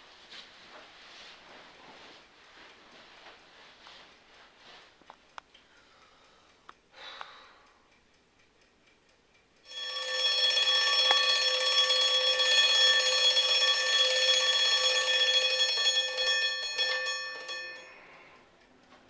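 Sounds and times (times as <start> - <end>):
alarm clock bell ringing: 9.6 - 18.2.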